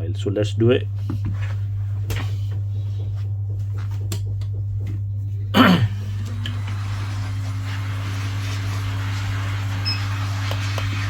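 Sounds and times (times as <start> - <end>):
low electrical hum: 0.0 - 11.0
person clearing throat: 5.5 - 6.1.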